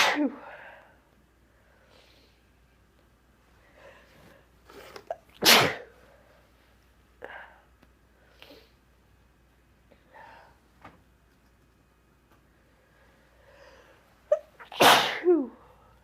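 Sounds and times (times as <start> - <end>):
person sneezing: 0.0 - 0.5, 4.7 - 6.0, 14.3 - 15.6.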